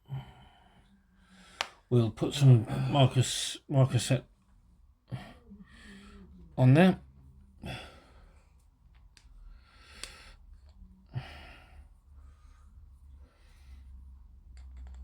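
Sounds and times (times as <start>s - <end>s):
faint breathing: 0.0s - 1.9s, 5.1s - 6.6s, 7.5s - 14.4s
low steady hum: 0.0s - 15.0s.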